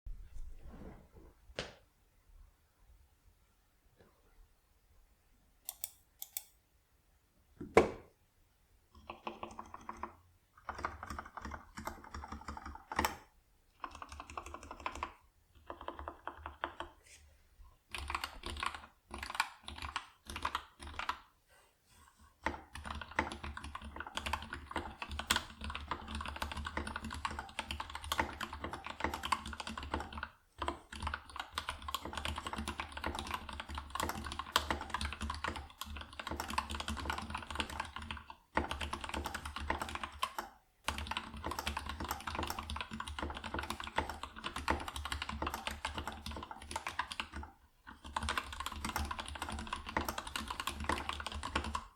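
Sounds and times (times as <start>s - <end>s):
typing on mechanical keyboard: 9.0s - 17.0s, 17.9s - 21.3s, 22.4s - 51.9s.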